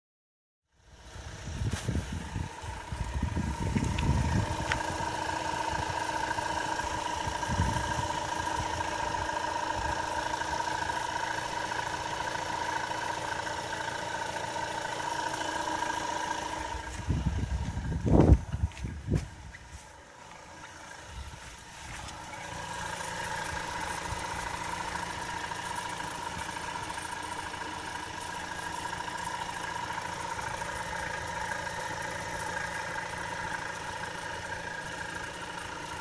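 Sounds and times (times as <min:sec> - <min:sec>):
low rumbling thumps: 0:01.2 - 0:06.0, 0:16.6 - 0:19.8.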